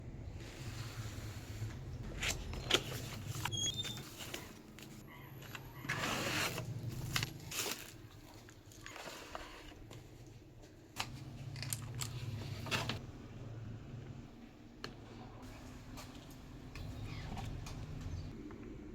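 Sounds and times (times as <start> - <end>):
packaging rustling: 4.1 - 9.6.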